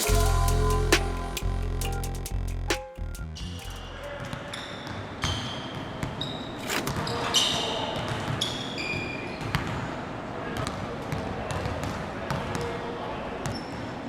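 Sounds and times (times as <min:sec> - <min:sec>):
echoing hubbub of hall: 0:00.0 - 0:02.1
sneakers squeaking on court: 0:04.2 - 0:09.8.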